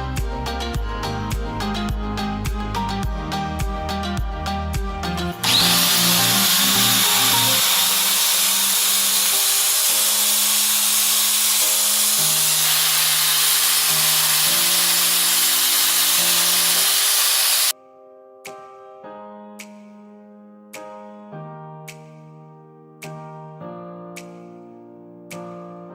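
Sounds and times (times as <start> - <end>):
background music: 0.0 - 25.9
sharpening machine grinding blade: 5.4 - 17.7.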